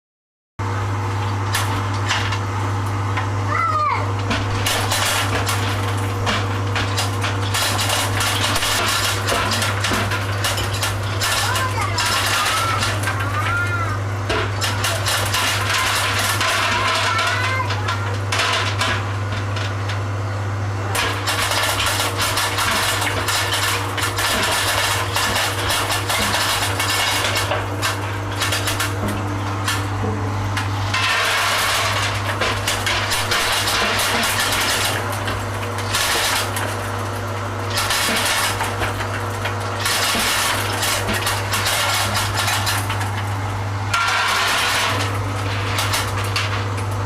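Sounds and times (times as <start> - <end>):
steady motor hum: 0.6 - 47.0
nuts rattling and cracking: 4.2 - 19.8, 21.0 - 30.0, 30.6 - 47.0.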